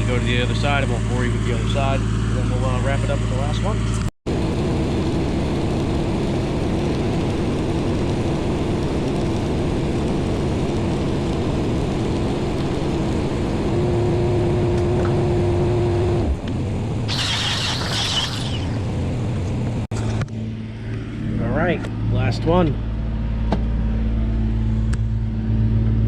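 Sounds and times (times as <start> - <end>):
engine running: 0.0 - 21.4
high-pitched crackling burst: 17.1 - 19.1.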